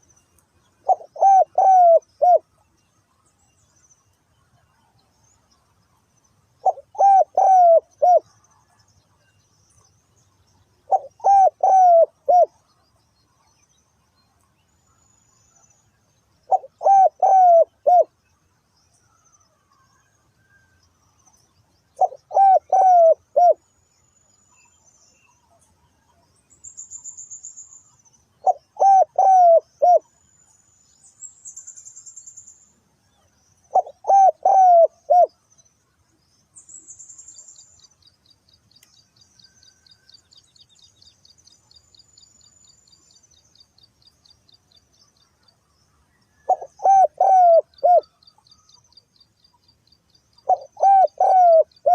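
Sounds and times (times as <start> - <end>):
dove cooing: 0.8 - 2.4, 6.6 - 8.3, 10.9 - 12.5, 16.5 - 18.1, 22.0 - 23.6, 28.4 - 30.1, 33.7 - 35.4, 46.5 - 48.1, 50.4 - 51.9.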